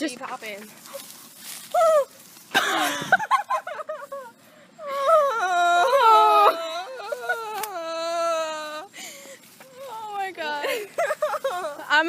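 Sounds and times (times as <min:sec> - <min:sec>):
woman wailing: 0:01.7 - 0:03.0, 0:03.8 - 0:09.0, 0:09.7 - 0:12.0
woman whimpering: 0:04.8 - 0:11.8.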